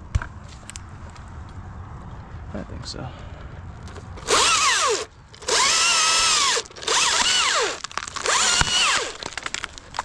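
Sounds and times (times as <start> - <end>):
chainsaw revving and cutting: 4.2 - 9.2.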